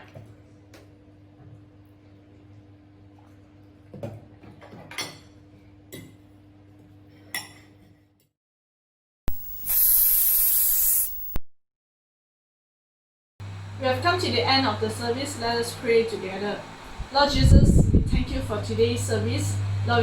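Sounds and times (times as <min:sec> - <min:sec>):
faint steady hum: 0:09.3 - 0:11.4, 0:13.4 - 0:20.0
loud hiss: 0:09.3 - 0:11.4.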